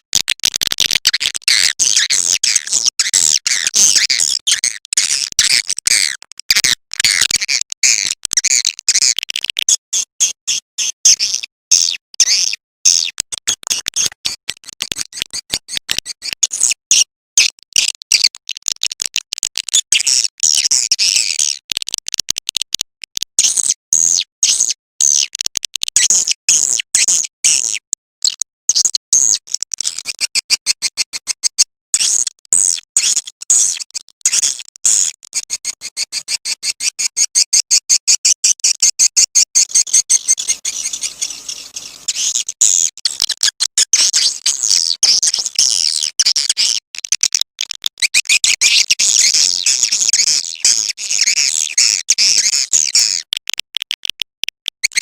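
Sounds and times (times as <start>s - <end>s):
rapid high-pitched bird chirping: 1.1s - 17.5s, 29.2s - 46.8s, 48.0s - 53.3s.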